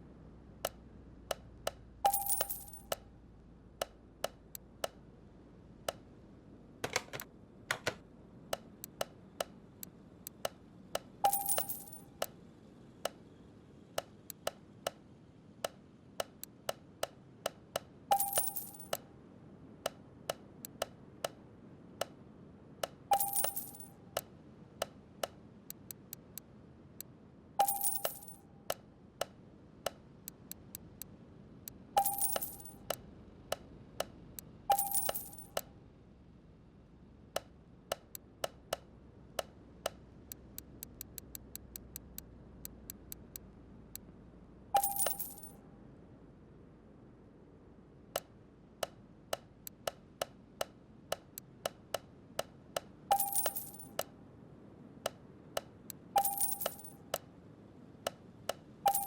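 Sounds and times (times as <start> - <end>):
sharp irregular clicks and taps: 0.6 - 3.1, 3.8 - 5.1, 5.8 - 6.2, 6.8 - 12.4, 13.0 - 19.1, 19.8 - 22.2, 22.8 - 35.7, 37.3 - 44.1, 48.1 - 54.2, 55.0 - 57.3, 58.0 - 59.0
ringing clink: 2.1 - 3.0, 11.3 - 12.1, 18.1 - 19.0, 23.1 - 24.0, 27.6 - 28.4, 32.0 - 32.9, 34.7 - 35.7, 44.8 - 45.6, 53.1 - 54.1, 56.2 - 57.0.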